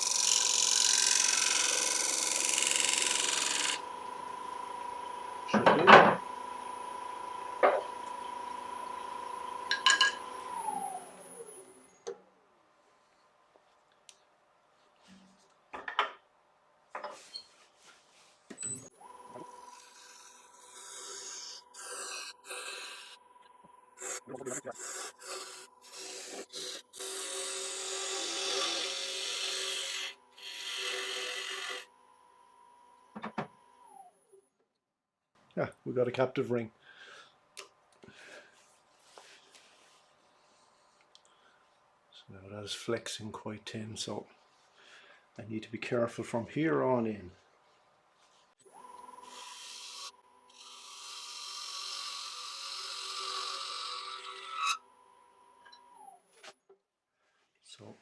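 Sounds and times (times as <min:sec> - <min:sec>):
turning tool cutting hiss: 0:00.0 - 0:03.8, 0:19.6 - 0:23.2, 0:24.0 - 0:31.9, 0:49.2 - 0:54.8
chisel scraping spinning wood: 0:00.0 - 0:03.9, 0:19.4 - 0:23.2, 0:24.0 - 0:31.9, 0:49.2 - 0:54.8
lathe whine: 0:00.0 - 0:12.1, 0:18.9 - 0:34.0, 0:48.7 - 0:56.2.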